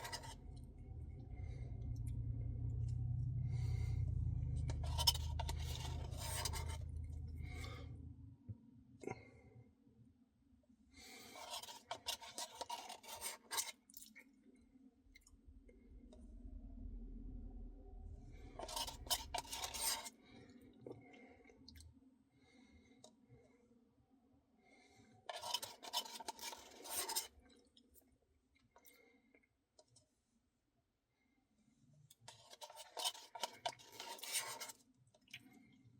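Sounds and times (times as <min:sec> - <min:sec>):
spoon scraping ice cream: 0:00.0 - 0:00.7, 0:04.6 - 0:07.8, 0:11.3 - 0:13.8, 0:18.5 - 0:20.2, 0:25.3 - 0:27.3, 0:32.3 - 0:34.8.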